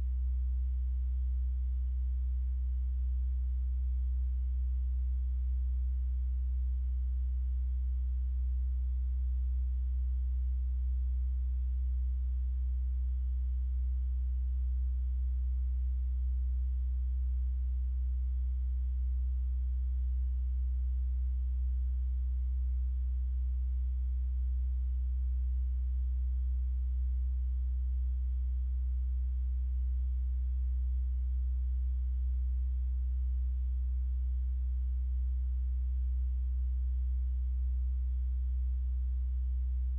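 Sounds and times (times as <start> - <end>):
steady low hum: 11.2 - 39.9.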